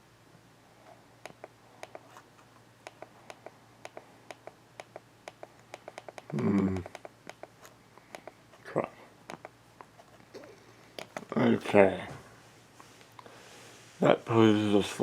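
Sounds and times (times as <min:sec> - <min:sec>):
computer mouse button clicks: 0:02.8 - 0:07.5
man's vocal noise: 0:06.3 - 0:07.0.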